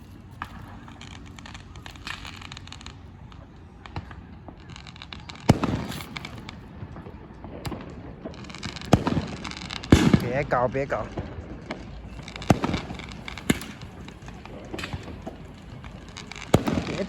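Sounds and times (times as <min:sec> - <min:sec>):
fireworks crackling: 0:00.0 - 0:17.0
firework pops: 0:00.3 - 0:17.0
loud firework bang: 0:08.5 - 0:17.0.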